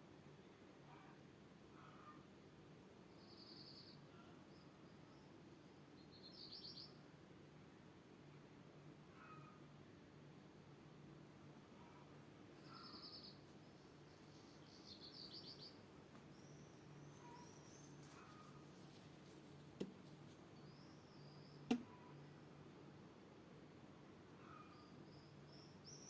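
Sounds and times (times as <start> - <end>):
songbird calls: 6.0 - 7.0, 11.8 - 18.7, 20.6 - 22.6, 24.4 - 26.0
sharp clicks: 21.7 - 21.9.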